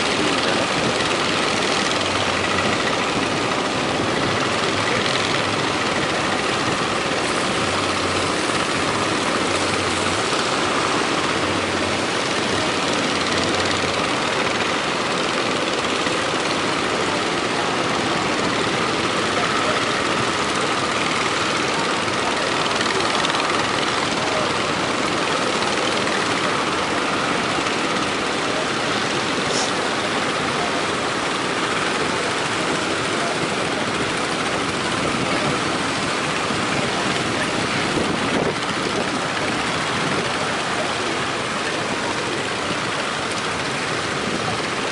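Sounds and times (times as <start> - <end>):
boat engine running: 0.0 - 44.9
surf rushing: 0.0 - 44.9
wind buffeting microphone: 31.2 - 44.9.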